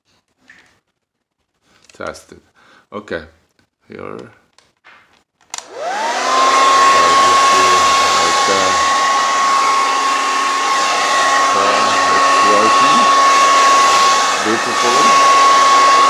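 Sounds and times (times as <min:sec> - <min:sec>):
hair dryer running: 0:05.5 - 0:16.0.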